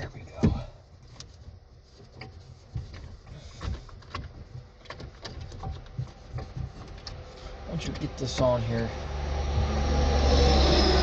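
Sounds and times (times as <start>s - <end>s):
light knocks and clicks: 0.3s - 7.3s.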